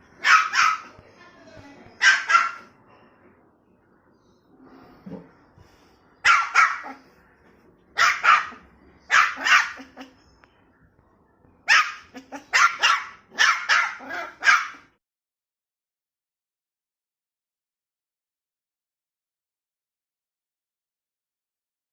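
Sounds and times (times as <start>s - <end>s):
puppy barking: 0.2s - 1.0s, 2.0s - 2.7s, 6.2s - 7.0s, 8.0s - 10.2s, 11.6s - 14.9s.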